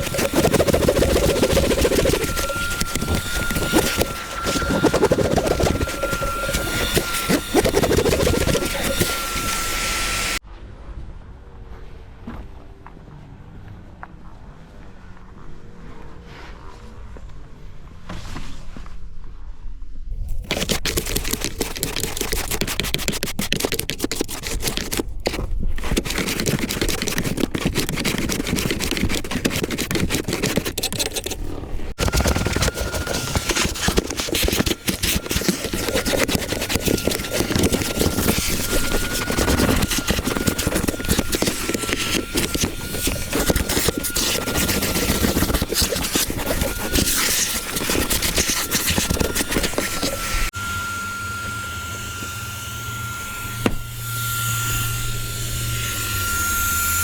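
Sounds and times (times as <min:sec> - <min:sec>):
small tool rattling and scraping: 0:00.0 - 0:10.4, 0:20.2 - 0:50.5.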